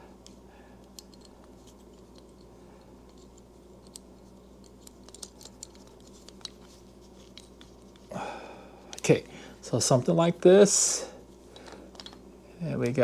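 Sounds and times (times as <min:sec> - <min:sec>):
steady low hum: 0:00.0 - 0:13.0
small metal parts clicking: 0:00.8 - 0:07.9.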